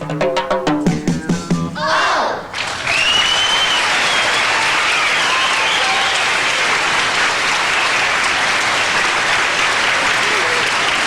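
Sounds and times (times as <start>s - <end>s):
audience cheering: 0.9s - 11.0s
audience clapping: 2.5s - 11.0s.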